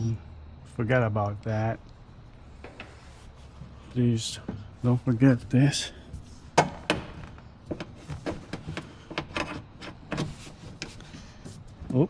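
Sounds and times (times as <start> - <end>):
hard parts clicking and knocking: 6.6 - 10.9.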